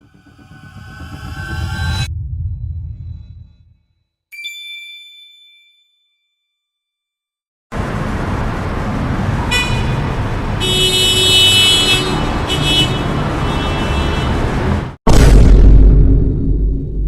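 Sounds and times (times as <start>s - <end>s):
loud deep sound: 0.6s - 4.1s, 15.1s - 17.0s
road traffic noise: 7.7s - 15.0s
car horns honking: 9.4s - 14.7s.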